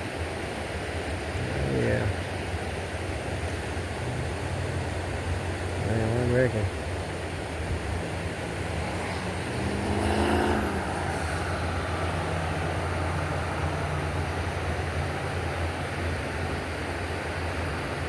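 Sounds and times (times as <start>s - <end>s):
steady low engine hum: 0.0s - 18.0s
vehicle passing close by: 3.1s - 17.1s.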